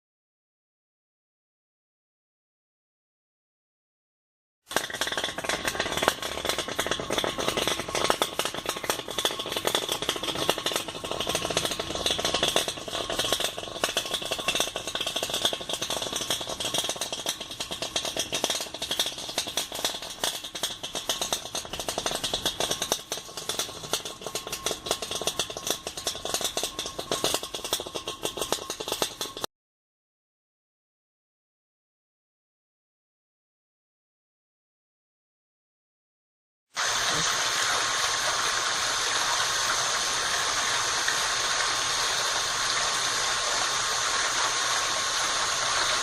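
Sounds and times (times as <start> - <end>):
washing machine rattling crackle: 4.7 - 29.5.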